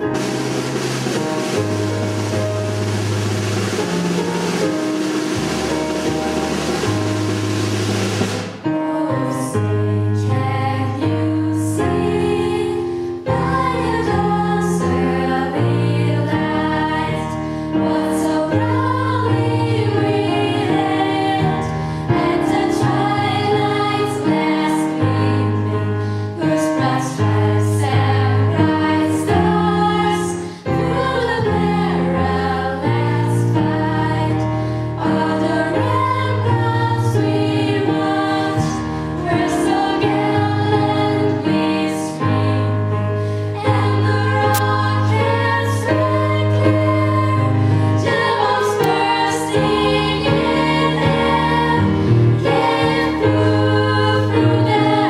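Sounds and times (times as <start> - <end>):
instrumental accompaniment: 0.0 - 11.0, 27.9 - 55.0
women singing together: 8.8 - 42.9, 43.5 - 55.0.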